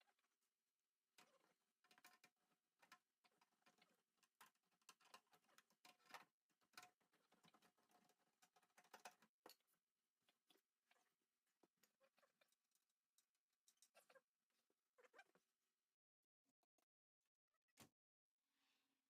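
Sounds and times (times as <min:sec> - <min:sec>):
faint irregular clicks and taps: 0:01.1 - 0:14.2.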